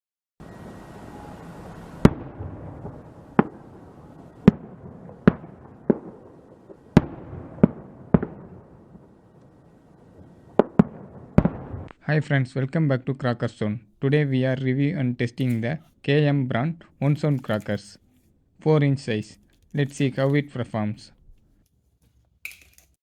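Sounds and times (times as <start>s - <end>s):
steady background hiss: 0.4s - 4.5s
firecracker bangs: 2.0s - 9.1s, 10.2s - 12.0s.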